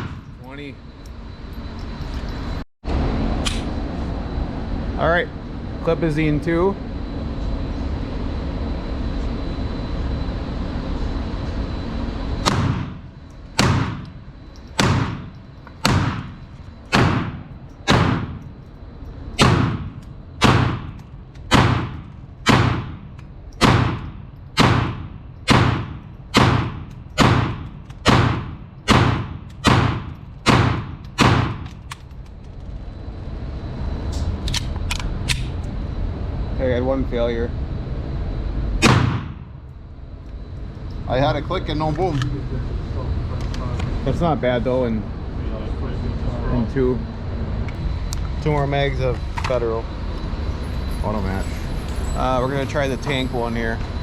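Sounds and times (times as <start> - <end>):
pistol shots echoing indoors: 13.6 - 14.1, 14.8 - 18.4, 19.4 - 23.0, 23.6 - 31.7, 38.8 - 39.4.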